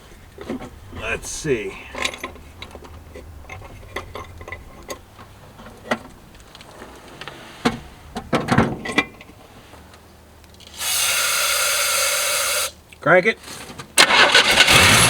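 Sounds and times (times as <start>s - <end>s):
faint low hum: 0.0s - 10.6s.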